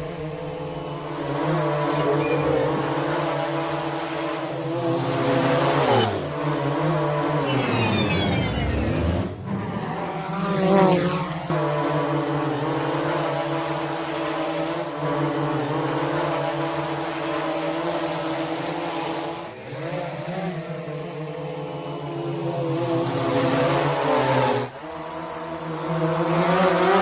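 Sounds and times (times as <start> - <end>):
drone propellers whirring: 0.0 - 16.1.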